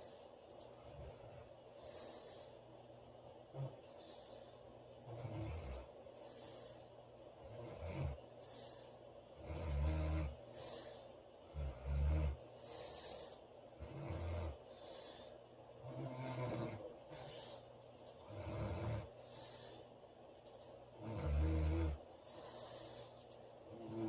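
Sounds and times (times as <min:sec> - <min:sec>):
woman snoring loudly: 0:07.4 - 0:08.2, 0:09.4 - 0:10.4, 0:11.5 - 0:12.4, 0:15.8 - 0:16.9, 0:18.2 - 0:19.2, 0:21.0 - 0:22.0.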